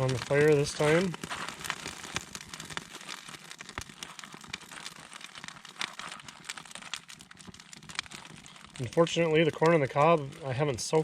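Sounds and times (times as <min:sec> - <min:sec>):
faint fire hiss: 0:00.0 - 0:07.1
fire crackling and popping: 0:00.0 - 0:11.0.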